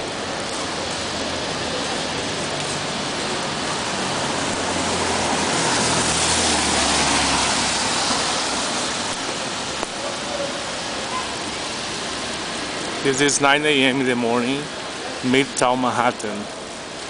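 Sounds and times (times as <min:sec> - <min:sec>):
steady traffic hiss: 0:00.0 - 0:17.0
vehicle passing: 0:00.5 - 0:13.0.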